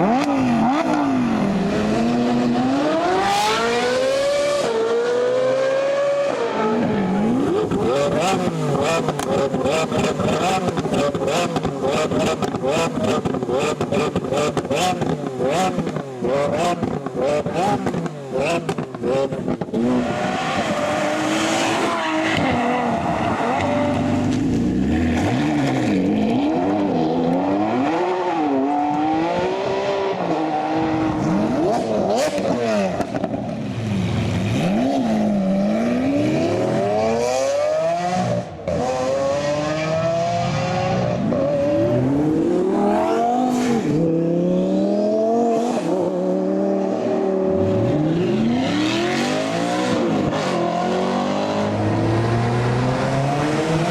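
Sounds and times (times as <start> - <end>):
car engines revving: 0.0 - 53.9.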